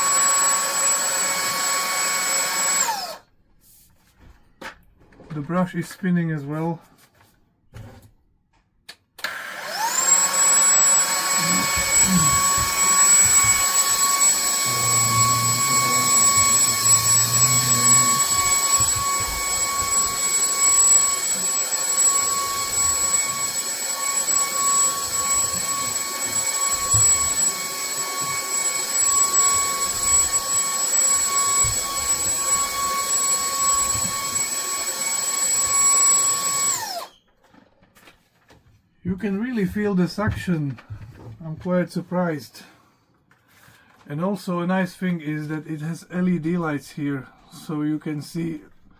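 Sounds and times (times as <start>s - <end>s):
handheld vacuum cleaner whine: 0.0s - 3.2s, 9.2s - 37.2s.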